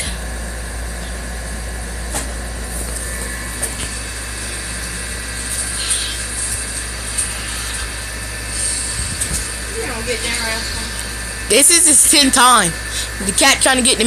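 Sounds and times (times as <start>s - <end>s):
low motor hum: 0.0s - 14.0s.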